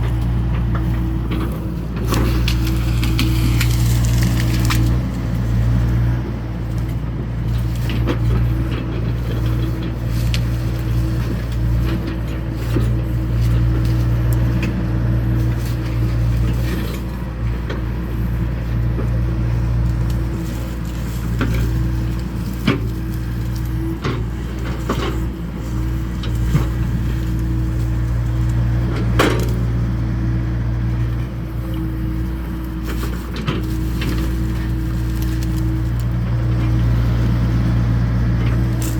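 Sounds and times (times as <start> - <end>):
sharp knocks and cracks: 0.0 - 17.8, 19.8 - 29.8
diesel engine running: 0.0 - 38.9.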